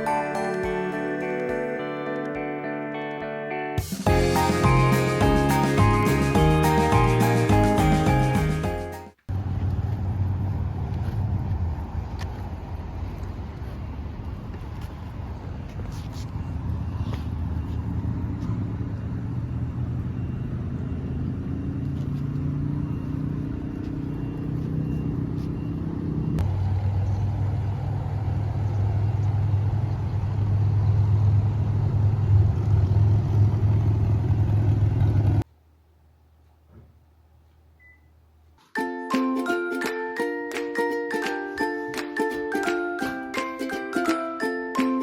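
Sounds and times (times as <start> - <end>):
motor vehicle engine hum: 9.2 - 35.5.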